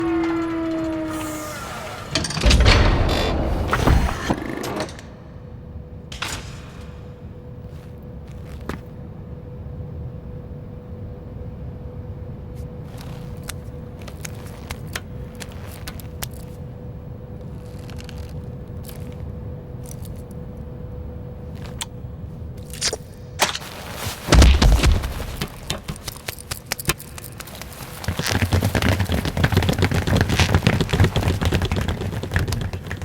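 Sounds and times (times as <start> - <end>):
faint hum: 0.0 - 33.0
small clicks and scrapes: 12.8 - 16.6, 17.4 - 20.4.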